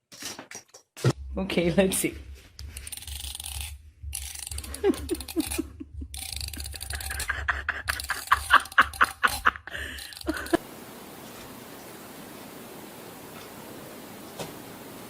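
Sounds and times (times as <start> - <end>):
people laughing: 4.6 - 10.7.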